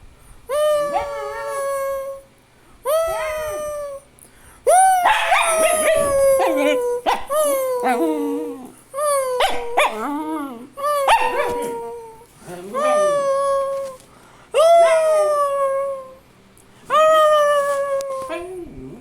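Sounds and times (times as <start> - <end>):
dog yelping: 0.5 - 1.9, 4.7 - 8.0, 9.1 - 10.2, 10.8 - 13.8, 14.6 - 15.8
dog howling: 0.5 - 2.2, 4.7 - 14.0, 14.6 - 16.2, 16.9 - 19.0.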